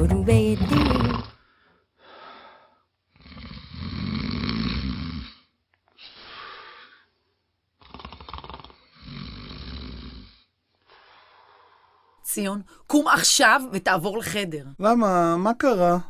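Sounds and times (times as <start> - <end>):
man snoring heavily: 0.6 - 1.4, 3.1 - 5.5, 7.8 - 10.6.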